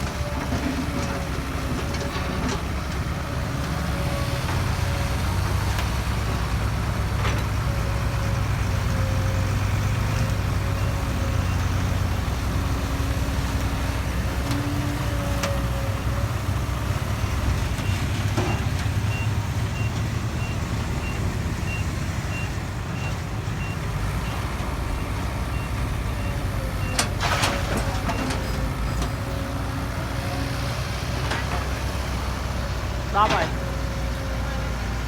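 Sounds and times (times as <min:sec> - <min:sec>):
heavy diesel engine running: 0:00.0 - 0:35.0.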